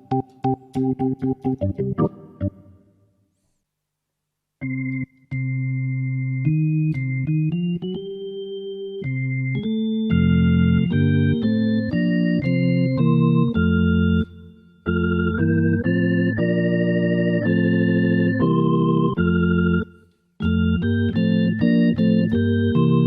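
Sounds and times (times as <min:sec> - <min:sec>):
electronic organ chords: 0:00.0 - 0:02.9, 0:04.6 - 0:23.0.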